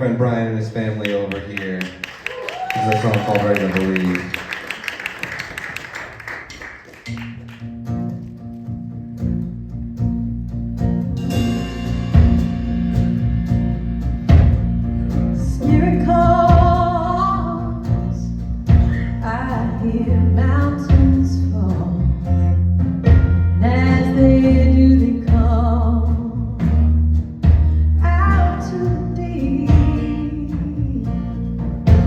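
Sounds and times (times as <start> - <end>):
live band guitar: 0.0 - 32.0
low bass notes: 7.7 - 32.0
person singing: 23.6 - 26.5.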